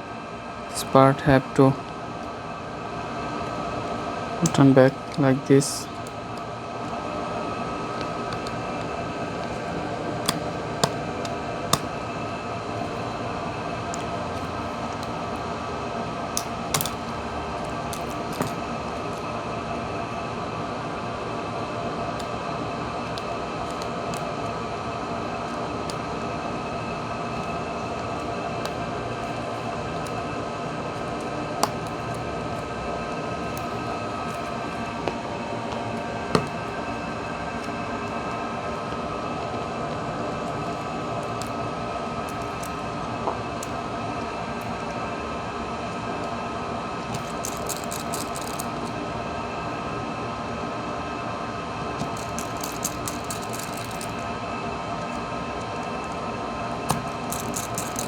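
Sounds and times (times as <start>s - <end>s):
steady mechanical hum: 0.0s - 58.0s
phone parts clicking: 10.2s - 12.0s, 16.4s - 18.6s, 31.6s - 32.2s, 33.4s - 36.8s, 42.3s - 42.8s, 47.1s - 48.9s, 52.0s - 54.2s, 56.9s - 58.0s.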